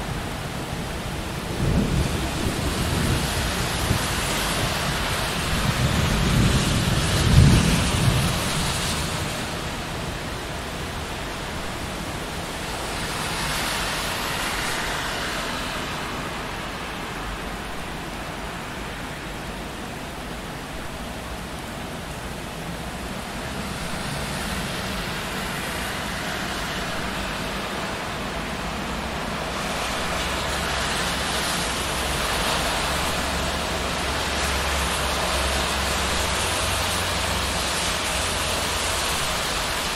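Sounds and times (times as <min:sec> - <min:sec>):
cars passing on wet street: 0:00.0 - 0:39.9
rain hiss: 0:00.0 - 0:39.9
thunder rumble: 0:01.4 - 0:10.1.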